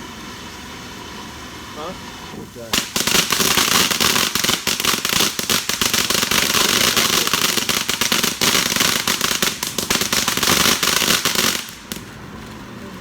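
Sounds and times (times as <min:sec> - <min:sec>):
firework crackling: 0:00.0 - 0:13.0.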